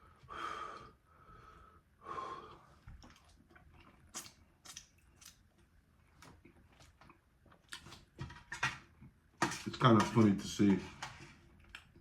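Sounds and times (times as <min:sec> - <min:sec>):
chewing and mouth clicks: 0:03.0 - 0:08.1.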